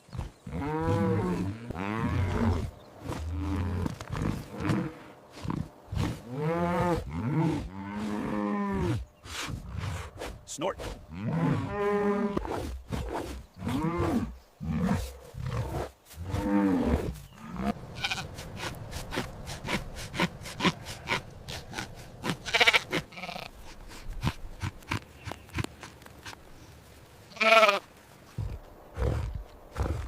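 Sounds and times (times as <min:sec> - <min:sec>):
farm animal calls: 0:16.3 - 0:26.4, 0:27.3 - 0:27.9.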